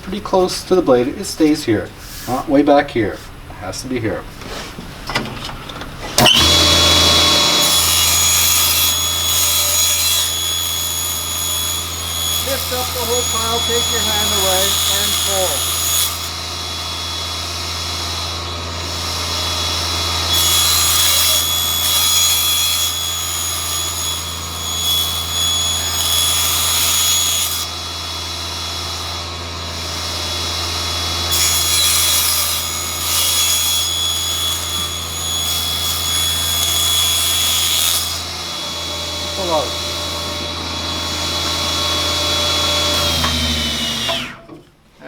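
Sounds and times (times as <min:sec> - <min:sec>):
table saw motor hum: 0:06.1 - 0:44.5
saw blade cutting wood strips: 0:06.2 - 0:16.6, 0:19.7 - 0:44.6.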